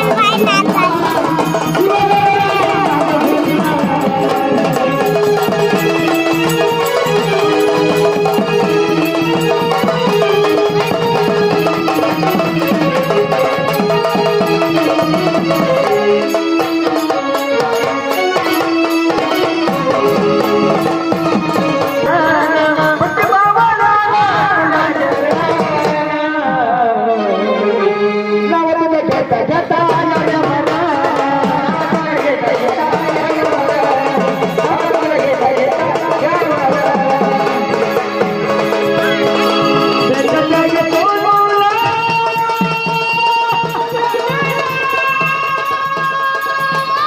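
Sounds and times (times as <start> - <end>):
drum beat: 0.0 - 23.7, 29.8 - 47.0
organ melody with held notes: 3.0 - 23.0, 36.6 - 41.7.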